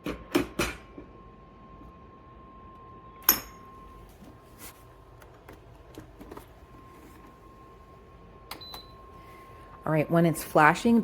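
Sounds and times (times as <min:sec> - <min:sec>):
sharp metallic clink: 0:03.2 - 0:03.6.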